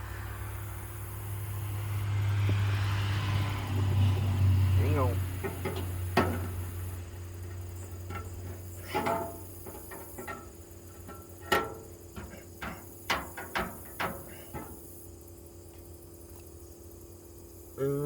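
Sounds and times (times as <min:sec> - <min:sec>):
sharp taps on sheet metal: 0:11.1 - 0:14.8.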